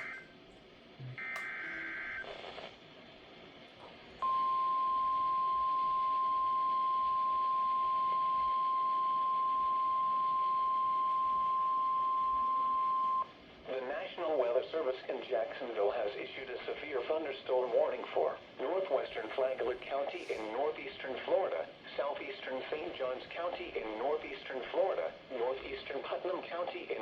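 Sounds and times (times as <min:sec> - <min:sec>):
steady warning alarm tone: 0:00.0 - 0:00.3, 0:01.2 - 0:02.2.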